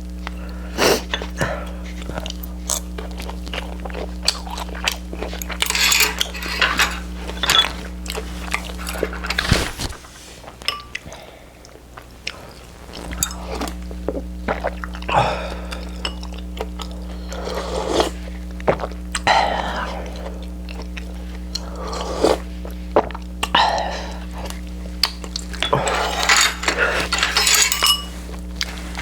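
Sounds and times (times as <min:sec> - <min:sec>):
utensils clinking against dishes: 0:04.2 - 0:09.6, 0:10.6 - 0:11.1, 0:25.0 - 0:29.0.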